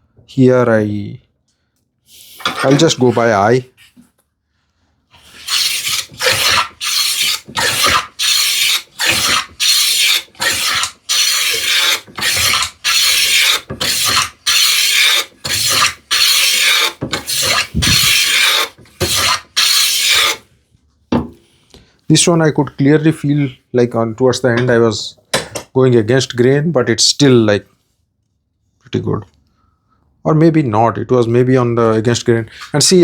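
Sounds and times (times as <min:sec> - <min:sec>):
hand plane shaving wood: 0:05.2 - 0:20.4.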